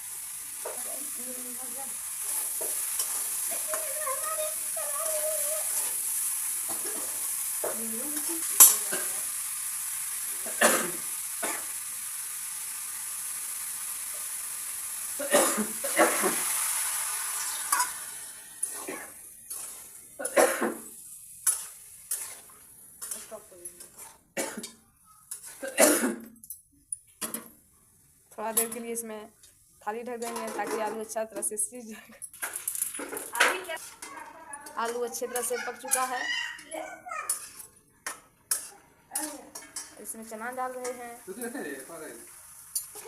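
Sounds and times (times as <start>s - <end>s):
vegetables sizzling in oil: 0.0s - 25.8s, 28.2s - 43.0s
spatula clinking: 2.2s - 9.1s, 17.4s - 20.4s, 21.4s - 24.2s, 25.2s - 25.7s, 28.5s - 41.5s
spatula scraping a pan: 2.2s - 9.1s, 17.4s - 20.0s, 20.7s - 24.3s, 25.2s - 25.8s, 33.1s - 40.2s.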